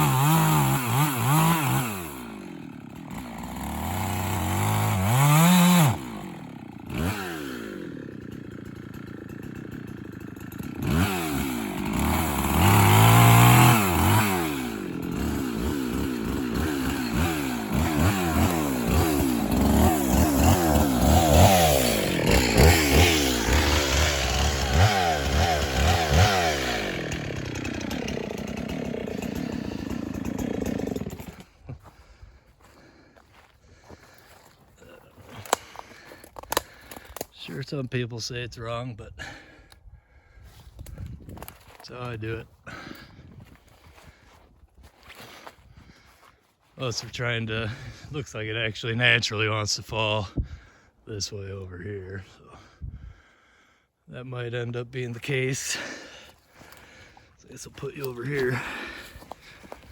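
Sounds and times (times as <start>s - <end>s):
chainsaw revving cutting wood: 0.0s - 31.9s, 34.8s - 37.5s, 55.2s - 59.9s.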